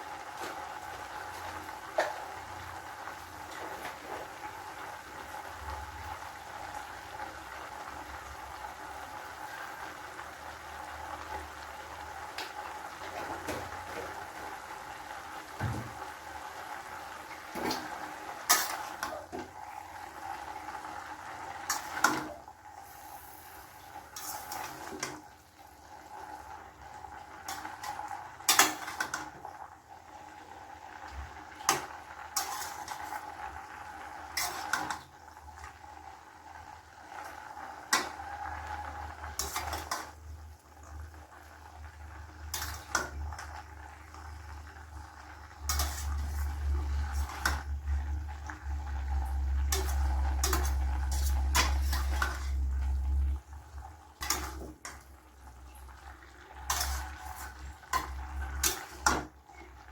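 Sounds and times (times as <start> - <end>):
cooking hiss: 0.0 - 59.9
spoon scraping a pan: 21.6 - 25.2, 31.7 - 33.3, 34.3 - 35.0, 39.3 - 40.2, 42.4 - 43.3, 45.6 - 48.0, 49.3 - 53.1, 54.2 - 55.1, 56.5 - 59.8.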